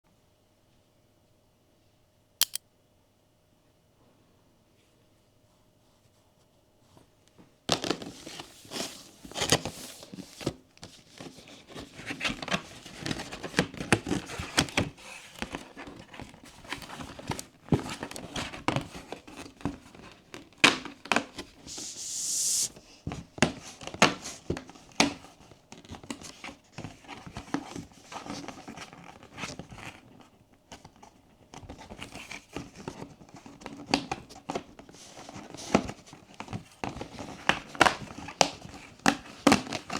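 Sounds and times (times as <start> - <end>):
hissing tear: 21.7 - 22.8.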